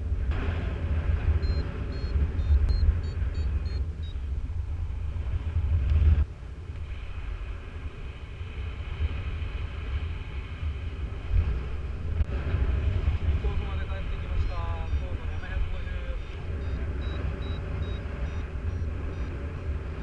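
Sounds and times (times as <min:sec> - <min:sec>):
wind buffeting microphone: 0:00.0 - 0:20.0
variometer short high beeps: 0:01.4 - 0:04.2, 0:14.2 - 0:19.4.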